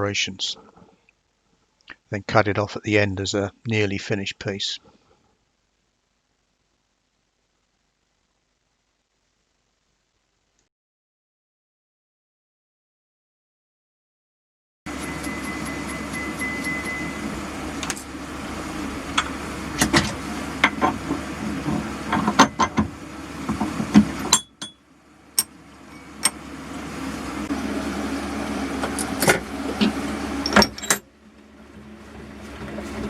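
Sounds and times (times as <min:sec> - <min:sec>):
milling machine motor humming: 0:14.9 - 0:33.0.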